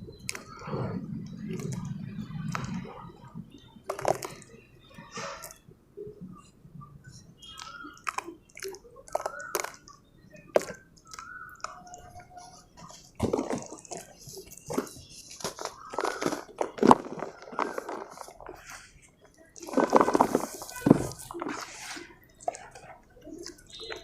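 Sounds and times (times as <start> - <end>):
cement crunching and cracking: 3.8 - 5.6, 7.4 - 24.0.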